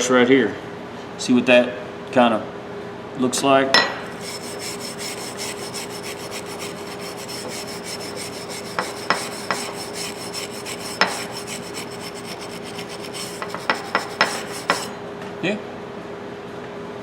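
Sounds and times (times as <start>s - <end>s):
wire brush scrubbing metal: 4.1s - 14.9s.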